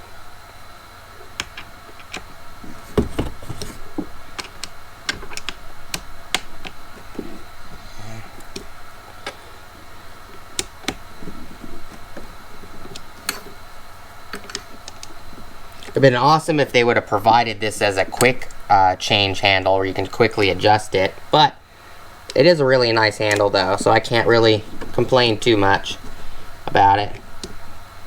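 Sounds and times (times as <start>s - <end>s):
plastic and metal parts clicking: 1.2s - 13.6s, 14.3s - 16.0s
heavy thump: 2.6s - 4.2s.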